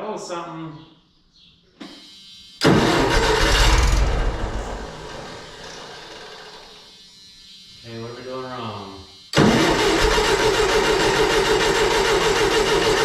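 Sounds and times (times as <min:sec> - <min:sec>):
engine cranking and firing: 0:02.6 - 0:06.7, 0:09.4 - 0:13.0.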